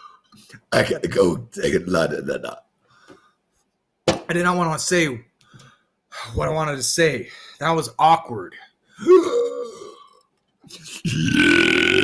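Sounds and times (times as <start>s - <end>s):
man burping: 9.0s - 12.0s.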